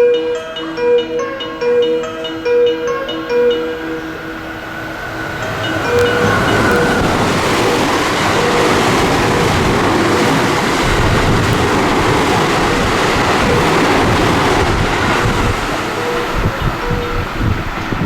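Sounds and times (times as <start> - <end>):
electric train running: 2.8 - 18.0.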